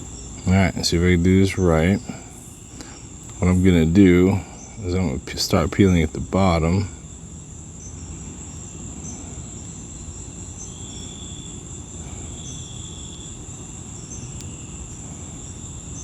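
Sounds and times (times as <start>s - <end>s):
low steady rumble: 0.0s - 7.0s
crickets trilling: 0.0s - 16.0s.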